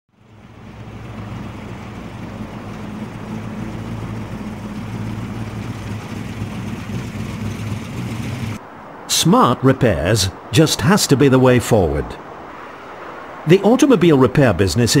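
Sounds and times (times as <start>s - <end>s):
low mechanical drone: 0.1s - 8.6s.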